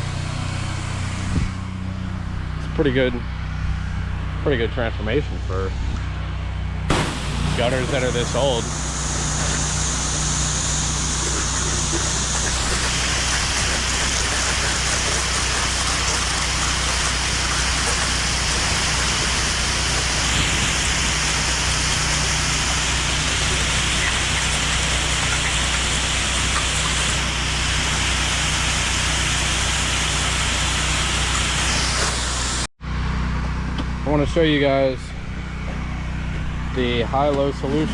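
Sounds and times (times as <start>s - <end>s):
engine hum: 0.0s - 37.9s
pressure washer spraying water: 6.9s - 32.7s.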